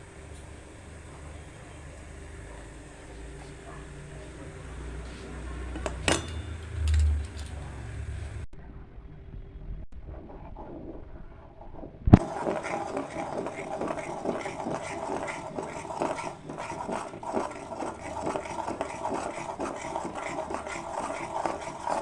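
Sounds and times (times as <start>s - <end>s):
milk cream bubbling and popping: 10.0s - 22.0s.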